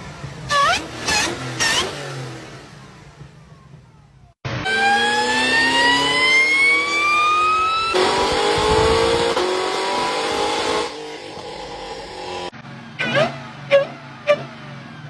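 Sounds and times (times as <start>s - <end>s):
engine and road noise: 0.0s - 15.0s
supercharger whine rising in pitch: 4.5s - 13.4s.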